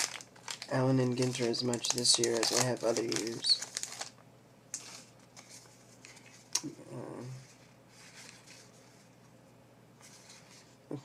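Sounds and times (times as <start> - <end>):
cards and wrapper rustling: 0.0 - 6.6.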